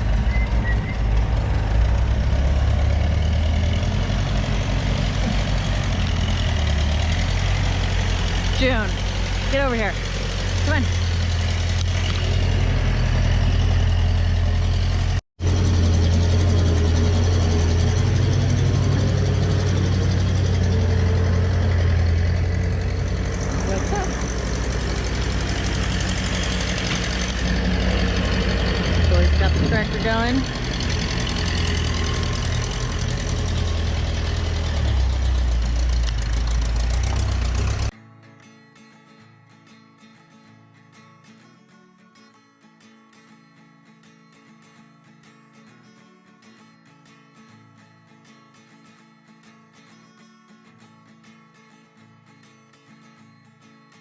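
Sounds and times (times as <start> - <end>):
tractor engine idling: 0.0 - 37.9
quiet acoustic guitar music: 37.9 - 54.0.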